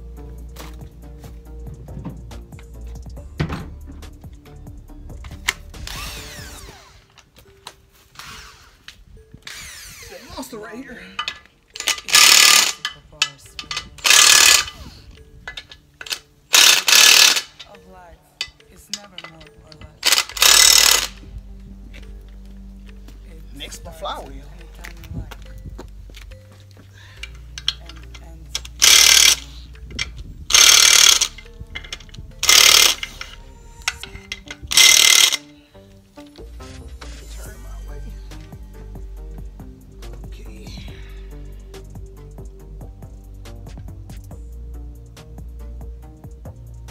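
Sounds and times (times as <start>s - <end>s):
background music: 0.0s - 46.9s
ratchet wrench clicking: 11.2s - 13.0s, 13.6s - 14.9s, 15.5s - 17.7s, 18.4s - 21.3s, 27.2s - 35.5s.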